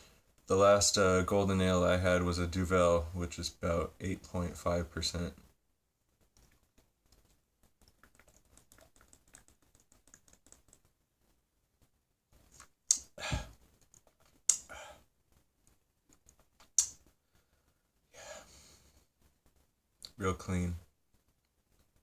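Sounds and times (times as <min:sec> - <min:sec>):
faint crackling clicks: 0:06.2 - 0:11.0, 0:15.3 - 0:17.2.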